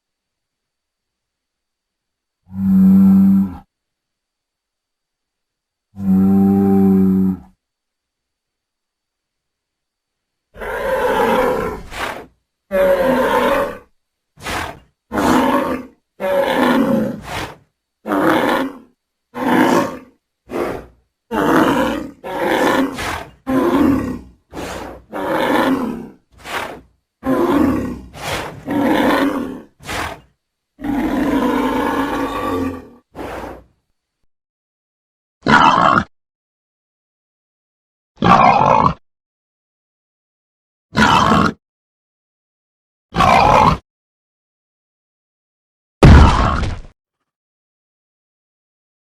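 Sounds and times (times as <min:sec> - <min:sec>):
creature roars and growls: 0:10.6 - 0:30.2, 0:30.8 - 0:33.7, 0:35.4 - 0:36.1, 0:38.2 - 0:39.0, 0:40.9 - 0:41.6, 0:43.1 - 0:43.8, 0:46.0 - 0:47.0.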